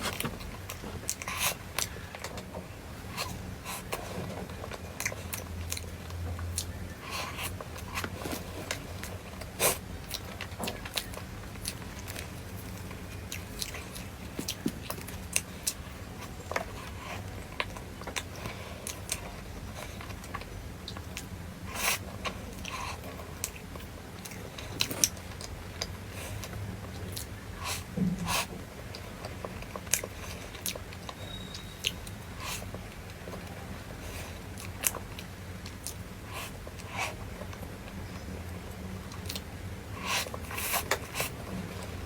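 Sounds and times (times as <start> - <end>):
person chewing food: 0.0 - 42.0
steady low hum: 0.0 - 42.0.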